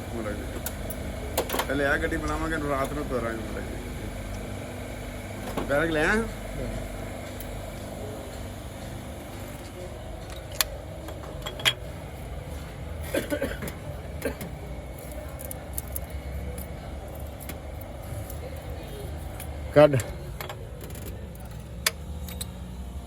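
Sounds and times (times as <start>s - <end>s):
low workshop hum: 0.0s - 23.0s
hand tools clinking on metal: 11.4s - 11.9s.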